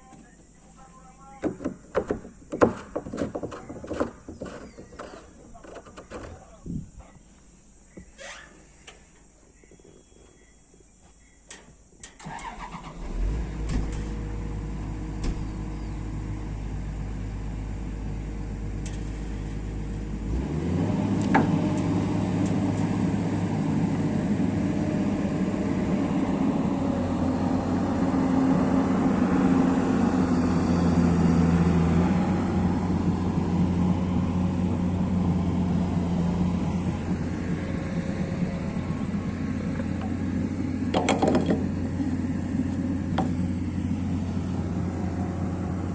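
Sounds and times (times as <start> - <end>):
diesel engine starting and idling: 12.0 - 45.9.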